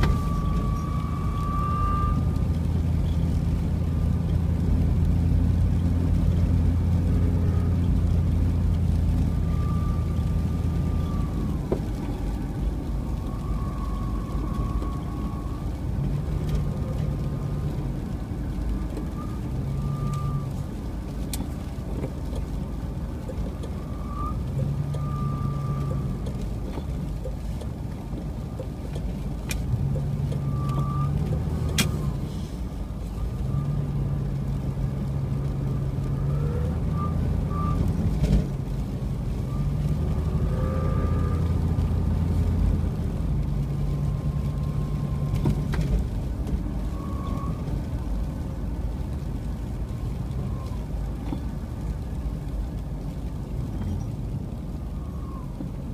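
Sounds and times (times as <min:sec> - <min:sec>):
car engine and road rumble: 0:00.0 - 0:55.9
low engine hum: 0:00.0 - 0:55.9.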